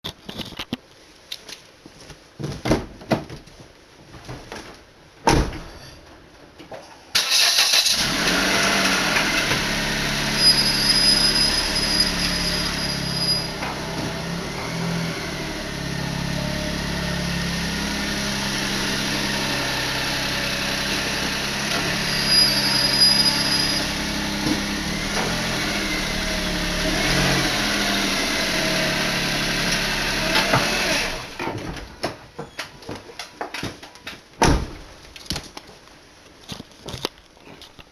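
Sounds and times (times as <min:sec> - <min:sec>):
brake squeal: 0:07.2 - 0:15.2, 0:19.4 - 0:28.3
car engine starting and idling: 0:07.2 - 0:31.4.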